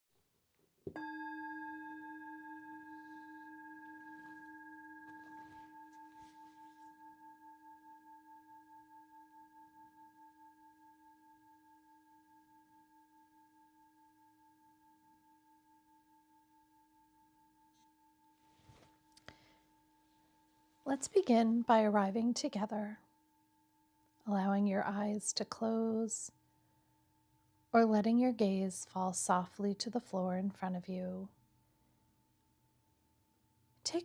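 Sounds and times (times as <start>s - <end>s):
singing bowl ringing: 0.9s - 20.9s.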